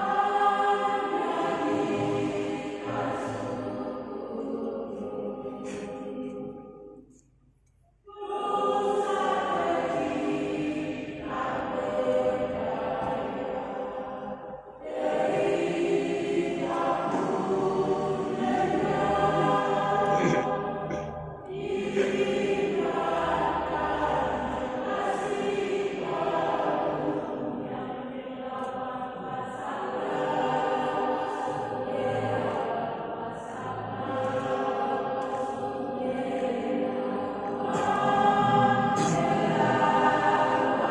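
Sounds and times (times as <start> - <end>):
choir singing: 0.0 - 7.2, 8.0 - 40.9.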